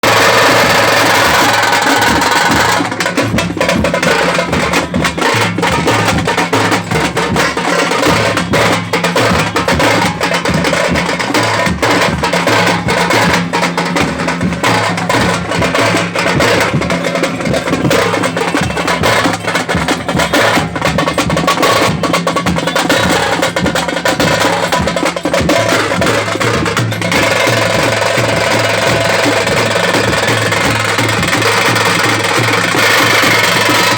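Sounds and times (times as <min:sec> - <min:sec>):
frame drums beaten fast: 0:00.0 - 0:33.9.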